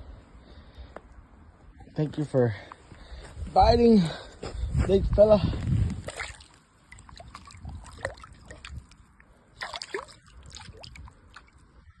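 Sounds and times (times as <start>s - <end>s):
water sloshing and splashing: 5.8s - 12.0s.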